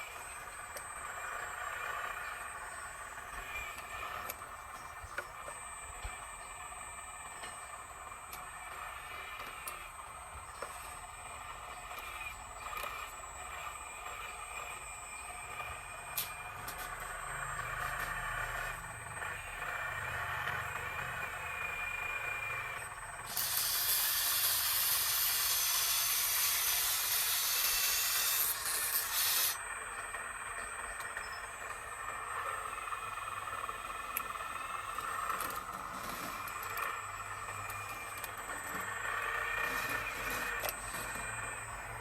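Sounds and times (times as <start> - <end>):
steady background hum: 0.0 - 42.0
loud steady hiss: 23.2 - 29.8.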